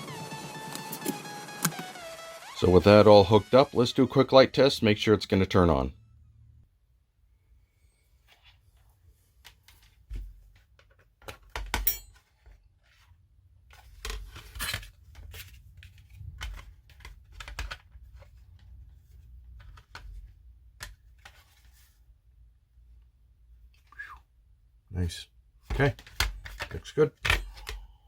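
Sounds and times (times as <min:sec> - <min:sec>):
hands handling plastic parts: 0:09.3 - 0:22.0.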